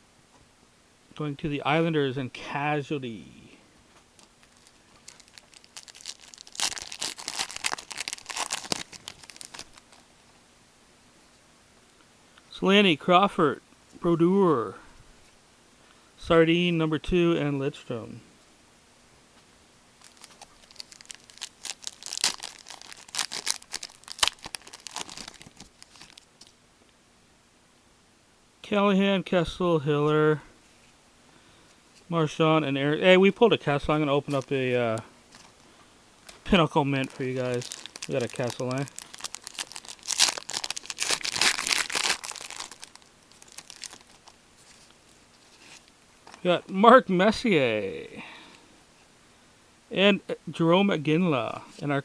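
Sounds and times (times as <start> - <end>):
wrapper tearing and crinkling: 4.4 - 10.0, 20.0 - 26.5, 34.2 - 35.6, 36.9 - 45.9
faint rustling: 34.2 - 46.5.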